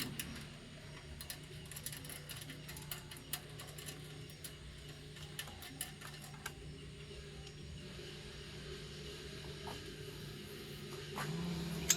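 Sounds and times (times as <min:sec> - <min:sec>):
steady low hum: 0:00.0 - 0:11.9.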